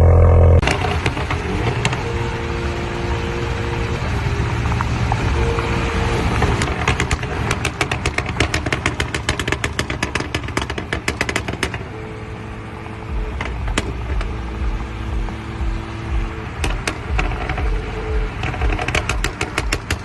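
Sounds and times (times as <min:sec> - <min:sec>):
exhaust crackling and popping: 0:00.0 - 0:20.0
low engine rumble: 0:00.0 - 0:20.0.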